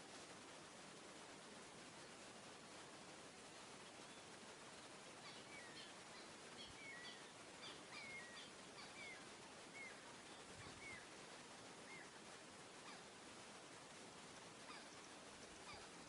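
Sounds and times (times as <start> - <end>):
faint steady hiss: 0.0 - 16.0
bird chirping: 5.2 - 11.1.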